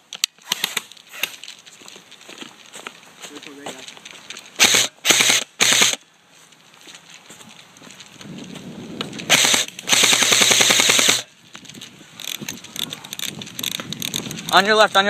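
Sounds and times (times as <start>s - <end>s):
airsoft gun firing bursts: 4.6s - 6.0s, 9.3s - 11.3s.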